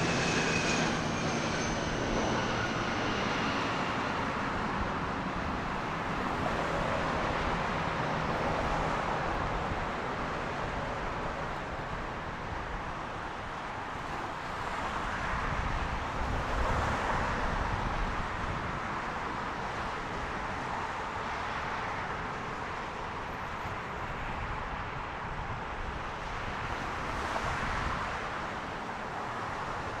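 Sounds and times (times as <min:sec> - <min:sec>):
jet engines rushing: 0:00.0 - 0:15.0.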